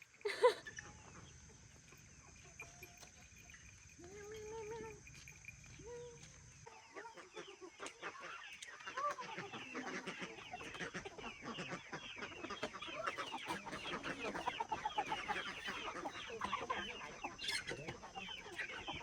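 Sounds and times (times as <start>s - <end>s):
chickens clucking and cheeping: 0.0s - 19.0s.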